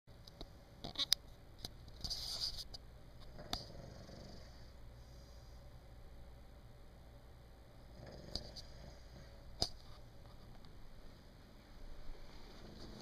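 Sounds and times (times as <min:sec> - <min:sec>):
man snoring: 0:03.4 - 0:04.6, 0:07.9 - 0:09.2.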